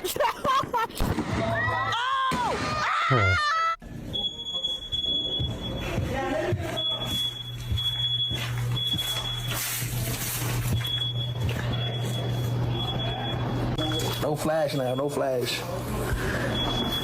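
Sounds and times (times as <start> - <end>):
high-pitched electronic alarm tone: 10.7 - 15.5.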